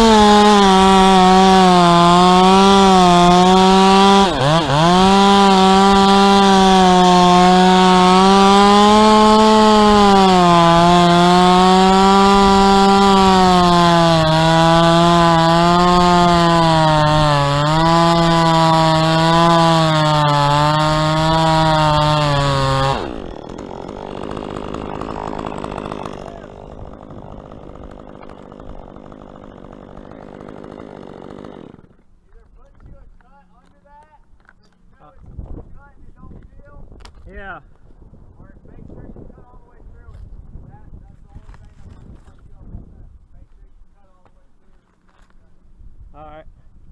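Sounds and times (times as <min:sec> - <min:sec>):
chainsaw cutting wood: 0:00.0 - 0:32.9, 0:41.2 - 0:42.6
rustling noise: 0:41.2 - 0:42.6.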